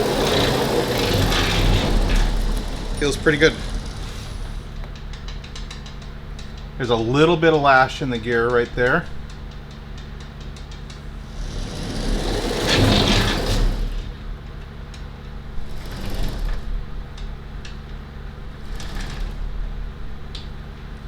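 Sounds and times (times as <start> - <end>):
gantry rolling and scraping: 0.0 - 6.0, 10.7 - 17.3, 18.5 - 20.3
gear clicks: 0.0 - 6.6.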